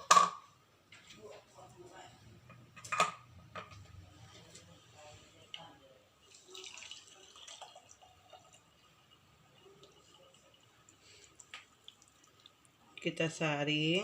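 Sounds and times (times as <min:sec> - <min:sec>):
juice dripping through strainer: 0:05.5 - 0:13.2.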